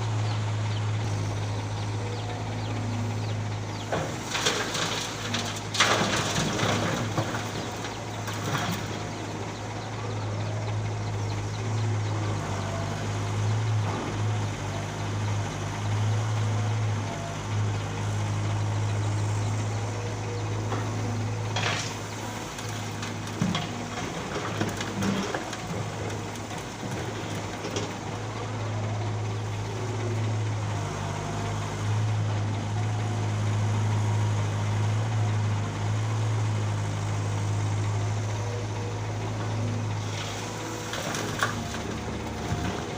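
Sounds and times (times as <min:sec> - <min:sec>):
diesel engine running: 0:00.0 - 0:42.9
soil knocking into dump truck: 0:03.9 - 0:09.1.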